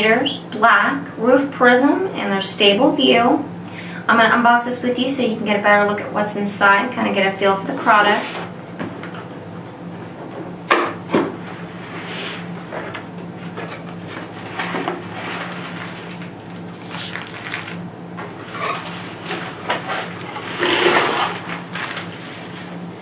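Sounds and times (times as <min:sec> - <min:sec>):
low electrical hum: 0:00.0 - 0:23.0
packaging rustling and scraping: 0:11.8 - 0:22.8.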